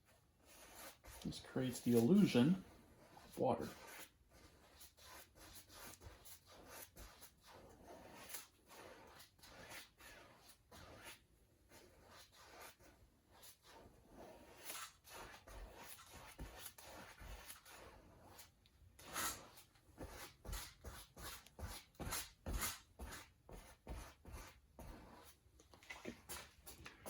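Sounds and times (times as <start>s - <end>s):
paintbrush swishing on canvas: 0.4s - 11.2s.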